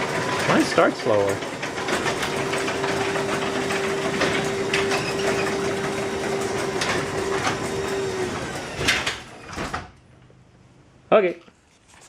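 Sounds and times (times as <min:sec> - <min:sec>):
garage doors rattling on tracks: 0:00.0 - 0:10.0
garage door motor hum: 0:00.0 - 0:10.2.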